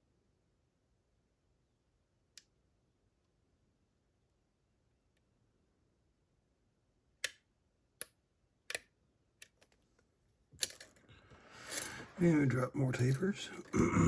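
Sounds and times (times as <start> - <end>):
lock picks clicking: 10.6 - 11.0.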